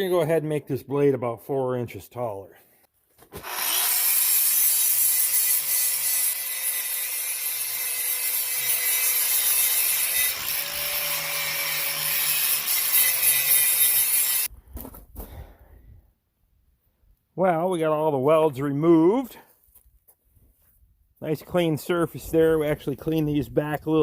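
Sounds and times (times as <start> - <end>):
grinder motor whine: 3.4 - 4.5
grinder grinding steel: 3.4 - 14.5.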